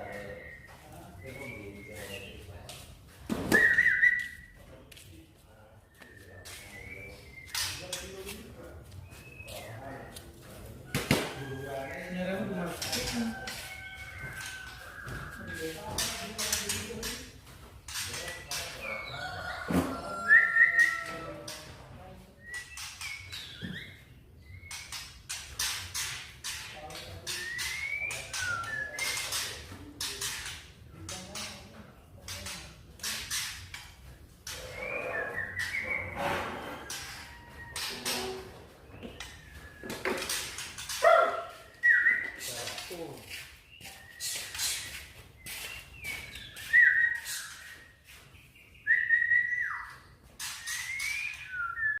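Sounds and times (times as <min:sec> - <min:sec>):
harsh noisy bird notes: 0:00.0 - 0:02.5, 0:06.1 - 0:08.2, 0:17.8 - 0:21.6, 0:22.4 - 0:30.6, 0:34.4 - 0:52.0
bird singing whistled phrases: 0:03.5 - 0:04.5, 0:41.8 - 0:42.4, 0:45.5 - 0:47.8, 0:48.8 - 0:50.0, 0:50.7 - 0:52.0.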